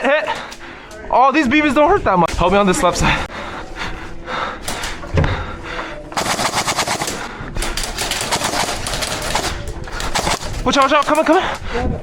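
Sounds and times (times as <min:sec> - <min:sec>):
airsoft guns firing: 0:06.2 - 0:10.5.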